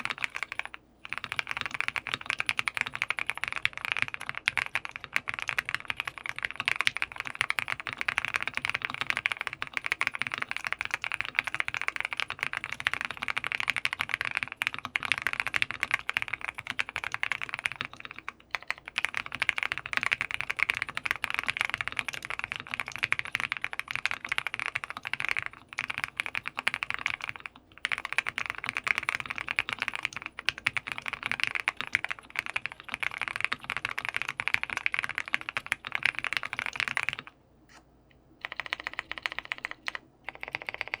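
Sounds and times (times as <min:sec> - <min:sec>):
fast typing on mechanical keyboard: 0:00.0 - 0:37.3, 0:38.4 - 0:41.0.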